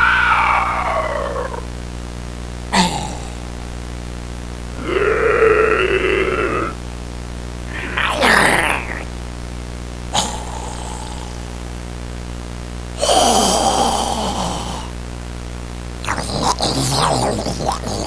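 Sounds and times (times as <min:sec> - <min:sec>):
harsh growl-like vocal sounds: 0:00.0 - 0:01.8, 0:02.7 - 0:03.7, 0:04.8 - 0:06.8, 0:07.7 - 0:09.1, 0:10.2 - 0:11.6, 0:13.0 - 0:15.0, 0:16.0 - 0:18.0
steady low hum: 0:00.0 - 0:18.0.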